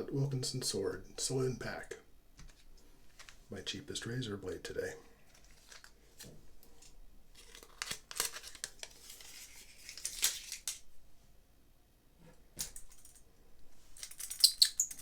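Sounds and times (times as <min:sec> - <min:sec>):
paper wrapper rustling and tearing: 0:05.3 - 0:10.8.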